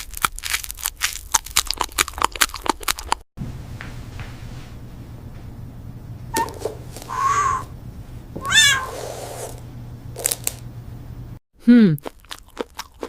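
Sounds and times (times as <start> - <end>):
low hum: 3.4 - 11.4
cat meowing: 6.4 - 7.7, 8.4 - 9.2.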